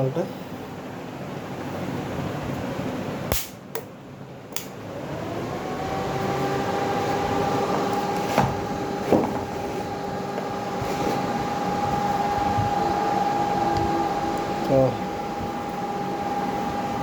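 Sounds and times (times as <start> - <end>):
steady electrical whine: 0.0 - 17.0
switch clicks: 4.5 - 4.7.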